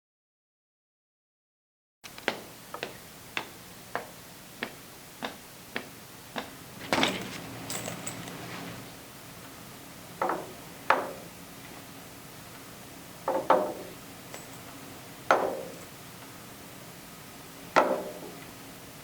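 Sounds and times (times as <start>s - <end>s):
clattering and rustling: 6.8s - 9.0s.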